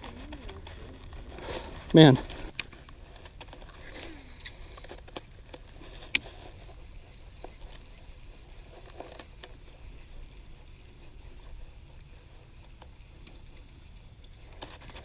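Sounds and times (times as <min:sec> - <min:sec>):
small clicks and ticks: 0:00.0 - 0:15.0.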